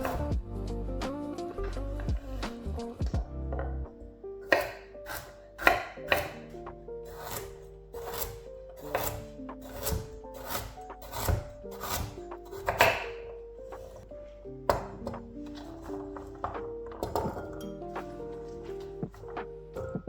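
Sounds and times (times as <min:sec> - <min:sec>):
soft background music: 0:00.0 - 0:20.0
knife chopping on cutting board: 0:04.5 - 0:06.5, 0:07.1 - 0:13.9.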